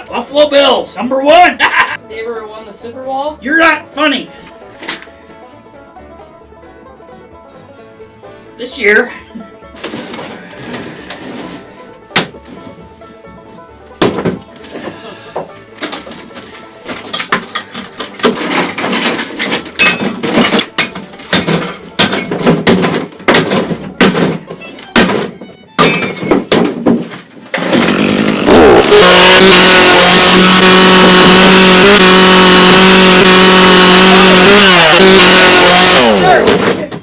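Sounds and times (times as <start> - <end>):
metal knocking and banging: 13.9 - 28.4.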